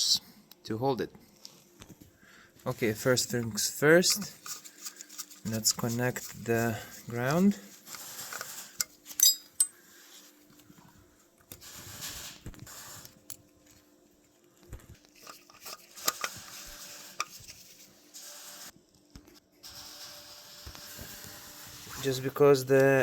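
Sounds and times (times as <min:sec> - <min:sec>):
rustling of parts: 0:01.4 - 0:18.7.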